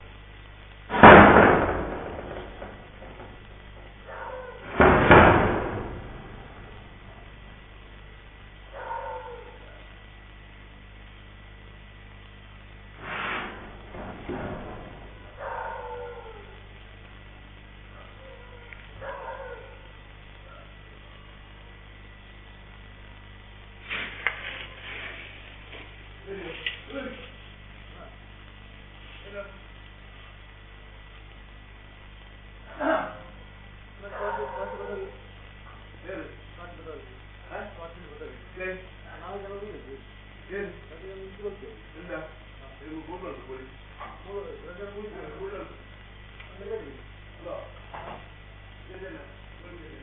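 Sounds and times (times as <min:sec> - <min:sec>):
noisy rustle: 0:00.0 - 0:08.8, 0:09.5 - 0:15.6, 0:21.5 - 0:32.7
electrical hum: 0:00.0 - 0:50.0
loud bangs: 0:00.9 - 0:03.8, 0:04.6 - 0:07.1.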